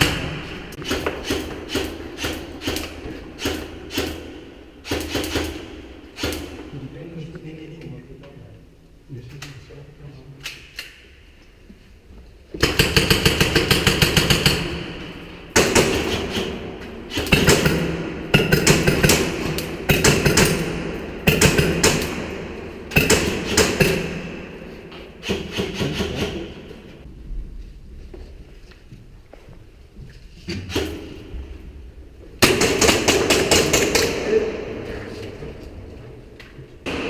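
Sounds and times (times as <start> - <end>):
airsoft guns firing bursts: 12.6 - 14.9, 15.5 - 24.4, 32.4 - 34.4.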